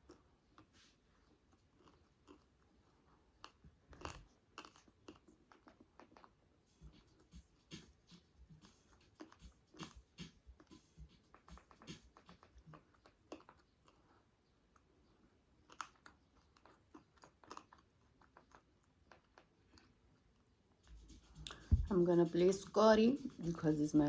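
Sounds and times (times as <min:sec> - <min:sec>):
chewing and crunching: 0:00.0 - 0:20.5
mouth clicks and smacks: 0:03.4 - 0:14.1, 0:15.6 - 0:20.0.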